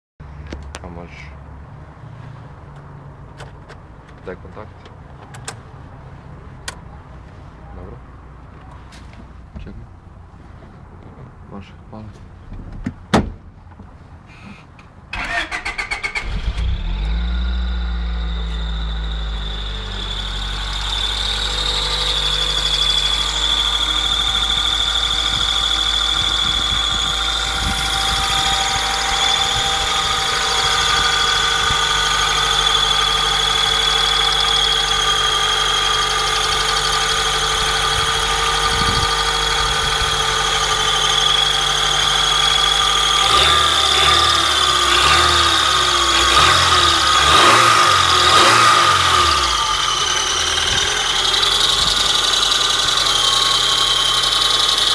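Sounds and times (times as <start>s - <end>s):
car engine idling: 15.1s - 54.9s.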